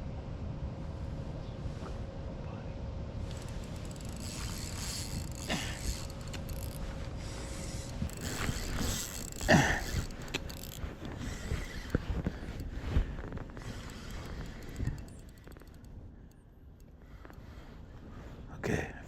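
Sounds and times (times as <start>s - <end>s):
fishing reel ratchet clicking: 3.3s - 12.7s, 13.5s - 17.4s.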